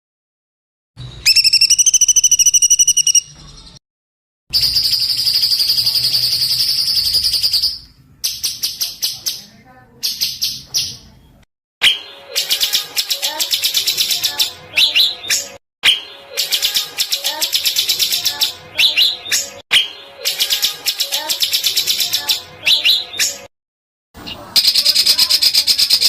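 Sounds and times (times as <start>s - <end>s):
bird chips: 1.2s - 3.8s, 11.8s - 23.5s, 24.6s - 26.0s.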